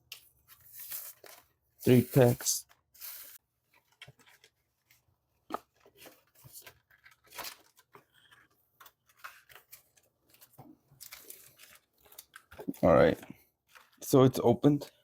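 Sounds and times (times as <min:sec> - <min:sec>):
plastic package crackling and tearing: 0:11.0 - 0:12.7.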